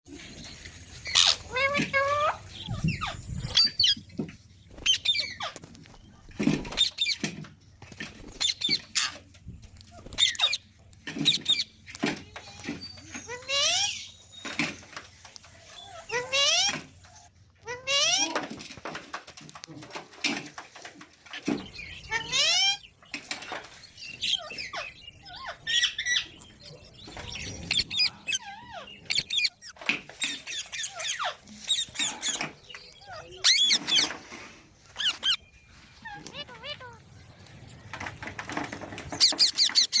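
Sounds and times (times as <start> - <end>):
parrots squawking: 1.0 - 4.0, 10.0 - 11.7, 13.2 - 14.1, 15.8 - 16.8, 17.6 - 18.4, 27.3 - 37.0, 39.1 - 40.0.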